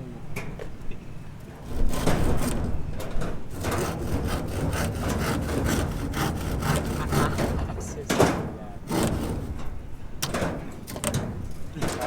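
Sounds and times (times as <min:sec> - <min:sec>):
hand tool rasping hard material: 0:01.6 - 0:02.8, 0:03.5 - 0:09.8.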